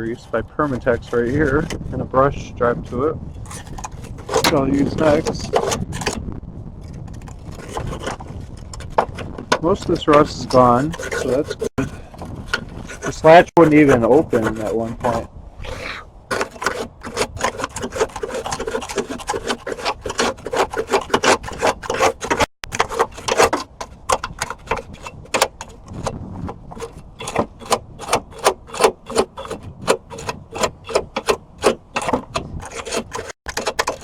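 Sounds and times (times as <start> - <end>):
wire brush scrubbing metal: 9.1 - 34.0.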